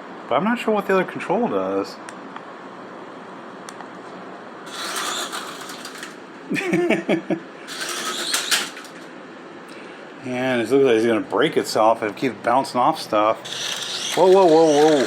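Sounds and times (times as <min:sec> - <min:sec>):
helicopter clattering against things: 0:04.7 - 0:06.2, 0:07.7 - 0:09.1, 0:13.4 - 0:15.0
toy helicopter motor whirring: 0:04.7 - 0:06.2, 0:07.7 - 0:09.0, 0:13.4 - 0:15.0.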